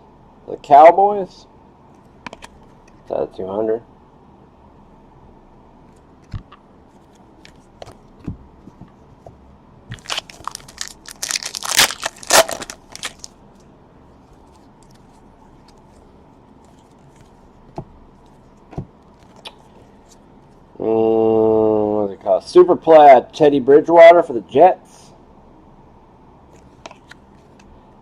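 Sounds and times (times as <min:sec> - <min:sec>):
plastic wrapper tearing: 0:09.9 - 0:13.3.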